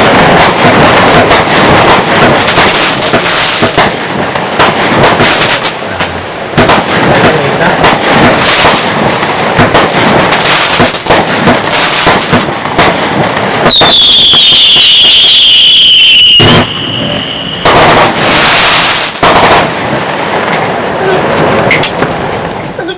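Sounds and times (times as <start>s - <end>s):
firework whistle: 0.0s - 19.8s
firework rushing bursts: 0.0s - 22.8s
firework cracks: 0.0s - 22.9s.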